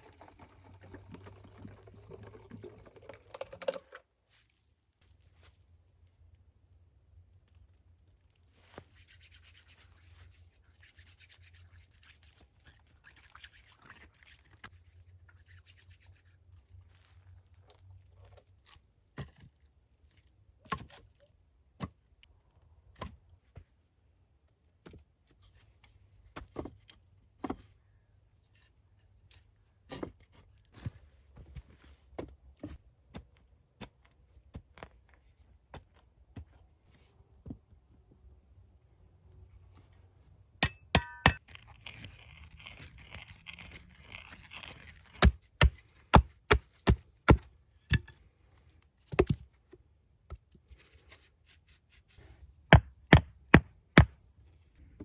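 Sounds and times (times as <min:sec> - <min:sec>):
scraping or rubbing: 0:41.4 - 0:45.4.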